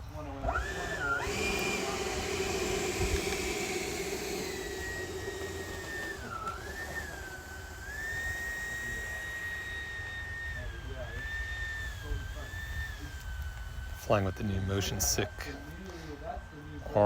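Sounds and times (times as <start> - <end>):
model jet motor whining: 0.0 - 17.0
rushing hum: 0.6 - 11.0.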